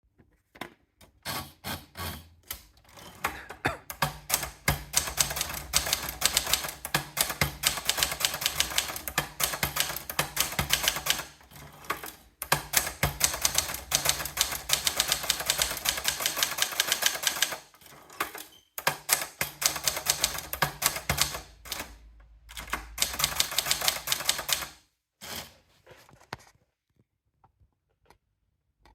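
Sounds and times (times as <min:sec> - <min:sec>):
typewriter typing: 0:01.3 - 0:25.6.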